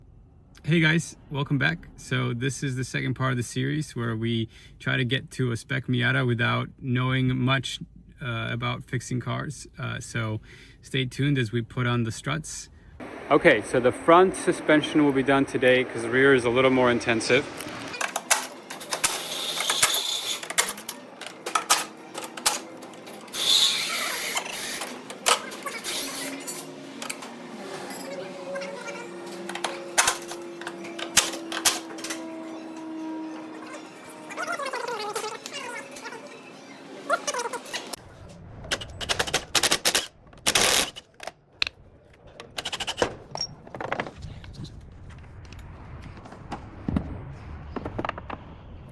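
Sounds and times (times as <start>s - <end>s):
hand tools clanking on metal: 18.0s - 28.2s, 29.2s - 33.0s
impact wrench rattling: 38.7s - 41.3s, 42.5s - 43.4s.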